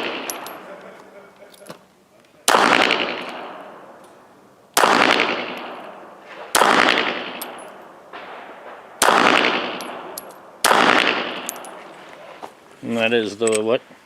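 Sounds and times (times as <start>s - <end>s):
gunshots echoing: 0.0s - 1.0s, 2.4s - 11.9s.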